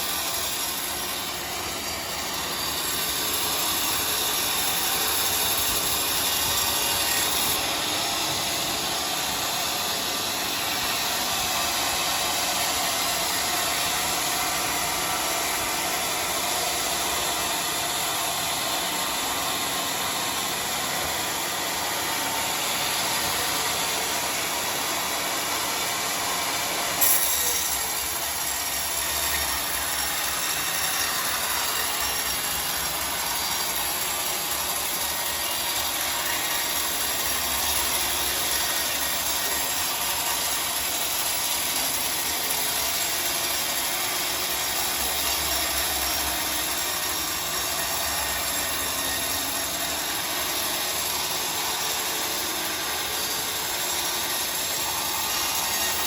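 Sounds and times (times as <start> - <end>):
sawmill saw cutting log: 0.0 - 56.0.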